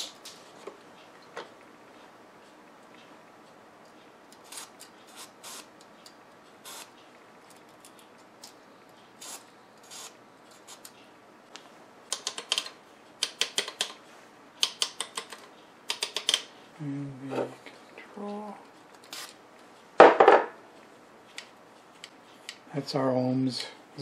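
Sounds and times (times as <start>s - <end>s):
runs of sharp clicks: 14.6s - 16.5s.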